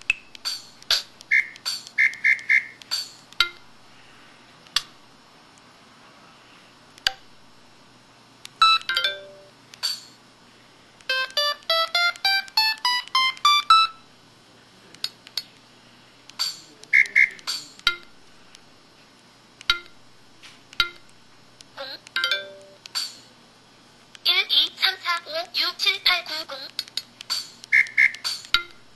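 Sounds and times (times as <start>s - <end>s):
electronic clicks and chimes: 11.1s - 14.0s.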